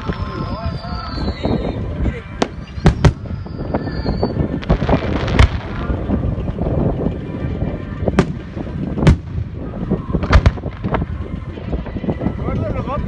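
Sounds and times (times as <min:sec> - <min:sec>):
fireworks crackling: 0:00.0 - 0:13.0
fireworks bangs: 0:02.3 - 0:06.8, 0:08.0 - 0:11.2.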